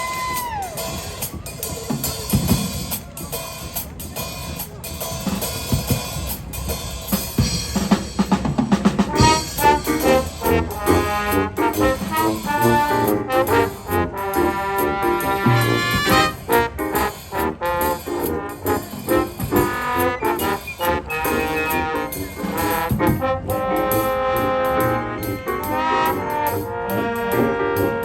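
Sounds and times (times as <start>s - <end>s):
marching band drums: 0.0s - 28.0s
brass section chords: 8.8s - 28.0s.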